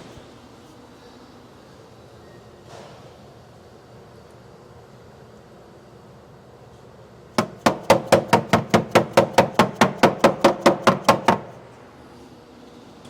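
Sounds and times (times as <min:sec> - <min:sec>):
hammer beating sheet metal: 0:07.4 - 0:11.6.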